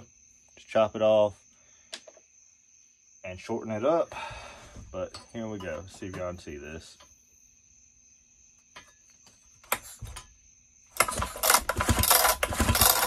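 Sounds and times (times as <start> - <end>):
chainsaw recoil starter whirring: 11.0 - 13.0.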